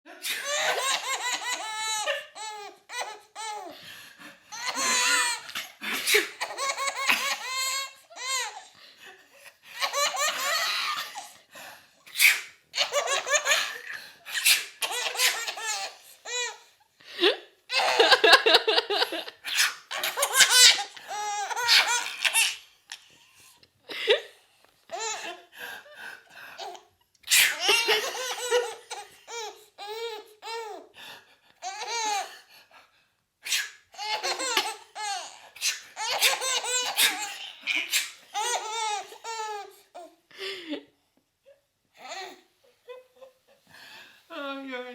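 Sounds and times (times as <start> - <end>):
baby laughing: 0.3 - 3.8, 4.5 - 8.7, 9.8 - 11.4, 12.2 - 16.6, 17.7 - 22.7, 26.6 - 30.8, 31.6 - 32.3, 34.0 - 39.8
man sneezing: 5.8 - 6.4.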